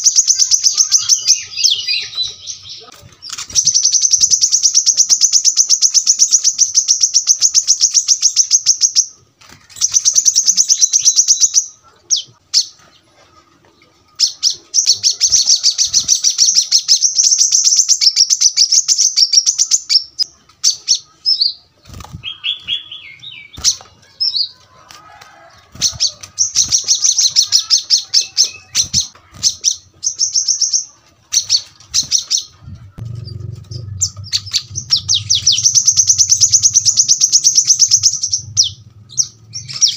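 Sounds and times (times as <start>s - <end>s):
sunbird high-pitched trills: 0.0s - 2.9s, 33.8s - 39.9s.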